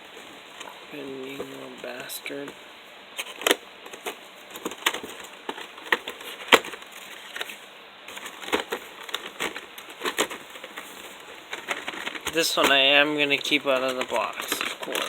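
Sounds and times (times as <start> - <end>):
packaging crackling: 3.2 - 15.0.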